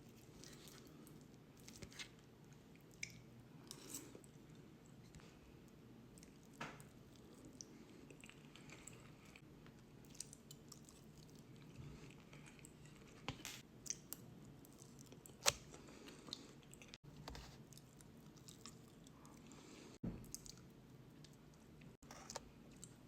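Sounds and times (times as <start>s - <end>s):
soft chewing: 0.0s - 23.0s.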